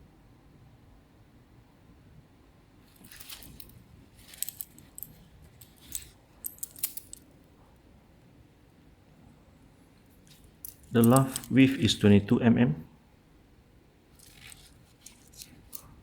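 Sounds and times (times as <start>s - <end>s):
metal watch links clinking: 2.9s - 7.3s, 10.1s - 11.8s, 14.2s - 16.0s.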